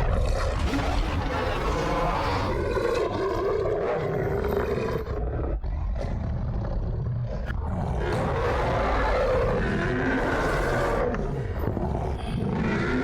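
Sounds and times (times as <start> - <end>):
werewolf snarling and roaring: 0.0 - 13.0.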